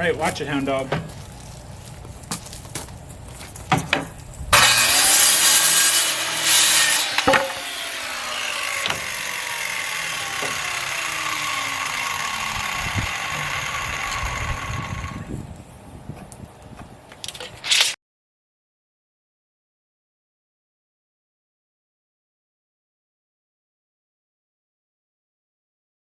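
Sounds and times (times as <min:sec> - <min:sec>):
electric saw cutting wood: 0:04.5 - 0:15.4.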